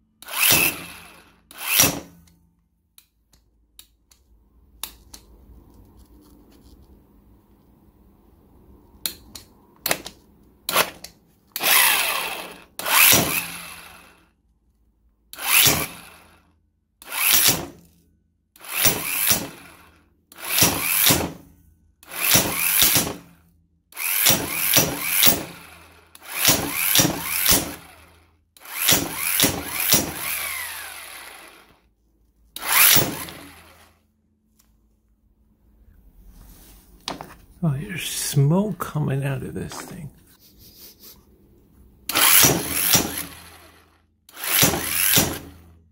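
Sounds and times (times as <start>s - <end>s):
impact wrench hammering: 0.2s - 2.3s, 11.6s - 13.7s, 15.4s - 16.0s, 17.1s - 17.8s, 18.7s - 19.7s, 20.4s - 21.4s, 22.0s - 23.3s, 24.0s - 27.9s, 28.6s - 30.9s, 32.6s - 33.8s, 42.1s - 43.7s, 44.3s - 45.6s.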